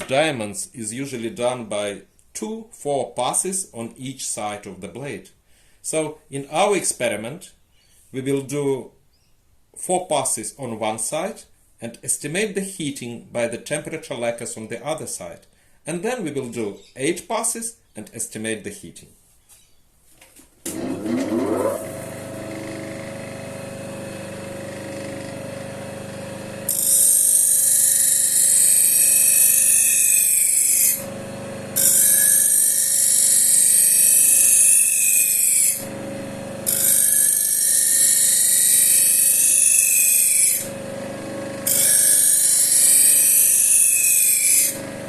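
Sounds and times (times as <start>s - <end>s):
grinder motor whining and humming: 20.7s - 45.0s.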